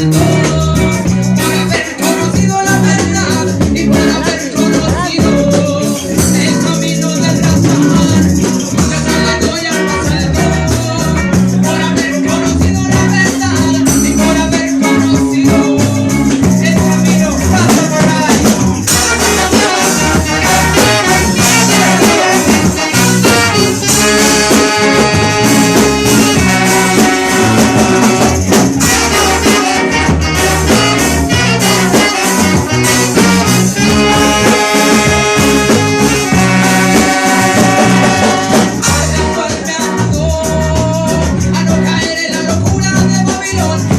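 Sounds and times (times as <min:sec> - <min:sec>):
loud music with steady beat: 0:00.0 - 0:43.9.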